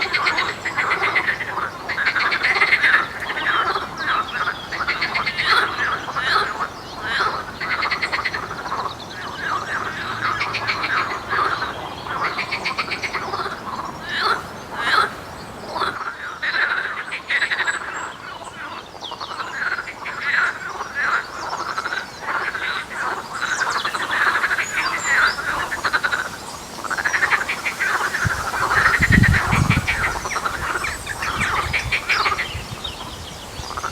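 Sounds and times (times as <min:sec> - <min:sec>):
frogs croaking: 0:00.0 - 0:33.9.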